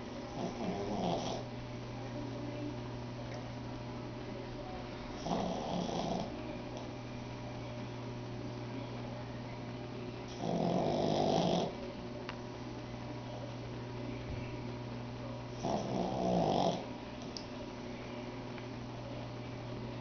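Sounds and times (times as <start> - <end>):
steady low hum: 0.0 - 20.0
dog snoring: 0.3 - 1.5, 5.2 - 6.3, 10.3 - 11.8, 15.6 - 16.9.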